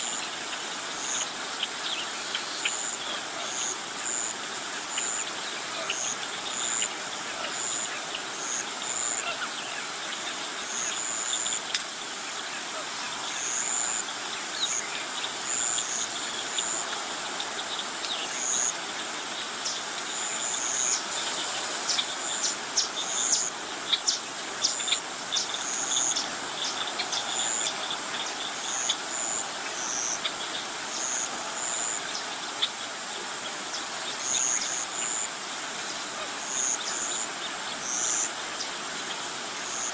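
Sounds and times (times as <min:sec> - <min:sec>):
insect hiss: 0:00.0 - 0:39.9.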